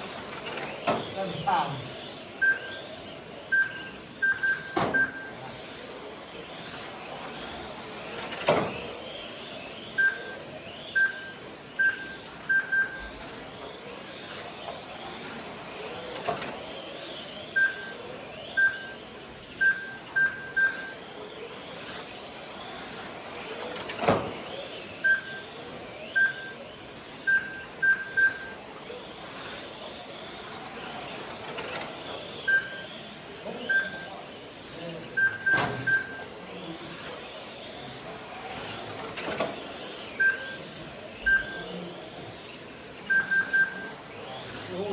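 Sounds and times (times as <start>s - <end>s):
rc car motors whining: 0.0s - 44.9s
short high beeps: 43.1s - 43.9s.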